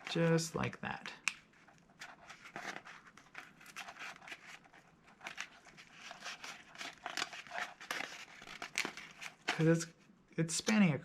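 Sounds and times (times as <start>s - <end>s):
cardboard and tape crinkling: 2.0s - 9.8s.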